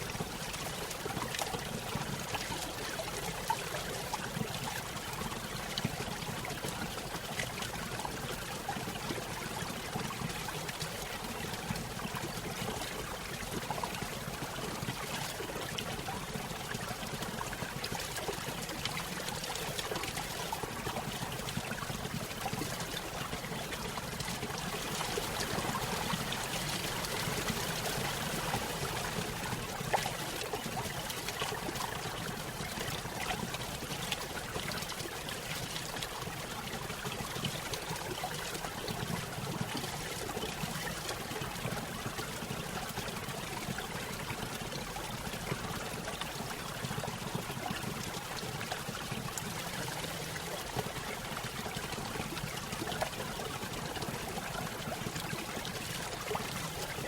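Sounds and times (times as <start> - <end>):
stream trickling over waterfall: 0.0 - 57.0.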